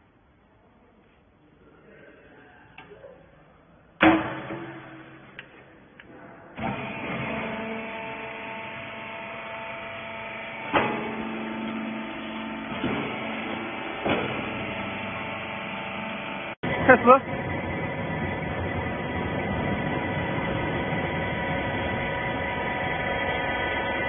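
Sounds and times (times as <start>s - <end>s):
loud metallic bang: 4.0s - 5.4s
machine clanks: 4.0s - 5.6s
hydraulic motor and pump humming: 4.0s - 24.0s.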